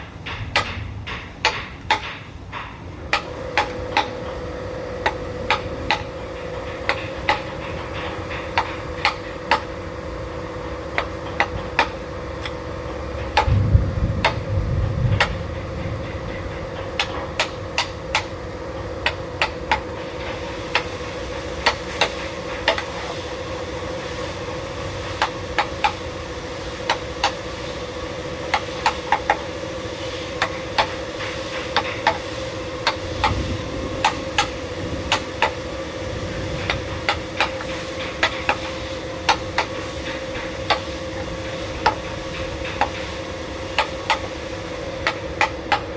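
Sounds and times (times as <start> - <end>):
low hum: 12.0 - 19.4.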